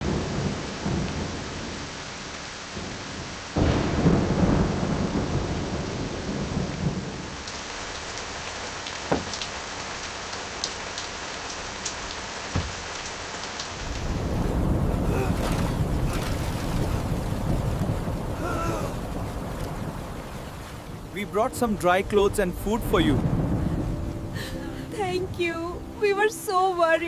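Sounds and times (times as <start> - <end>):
thunder clap rumbling: 0.0 - 7.6, 13.7 - 26.2
steady rain: 0.0 - 27.0.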